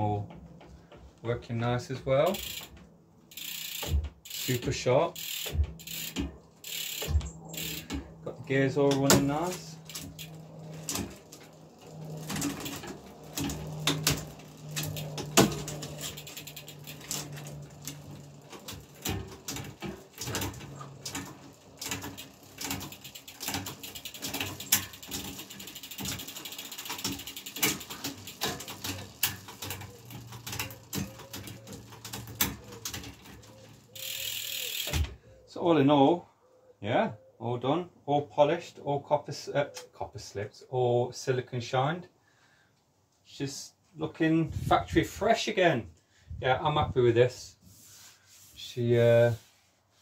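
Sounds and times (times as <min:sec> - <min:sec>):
bike chain running over sprockets: 0:02.2 - 0:08.2, 0:09.0 - 0:35.0
freewheel ratcheting: 0:02.2 - 0:08.3, 0:08.9 - 0:35.1
gear shifting clicks: 0:02.3 - 0:35.1.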